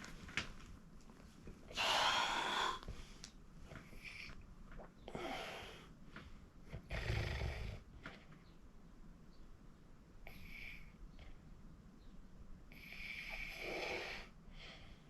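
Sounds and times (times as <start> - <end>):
person snoring: 1.7 - 2.8.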